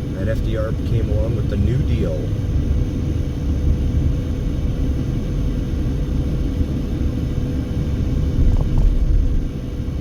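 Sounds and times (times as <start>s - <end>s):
car road and engine rumble: 0.0s - 10.0s
faint steady hum: 0.0s - 10.0s.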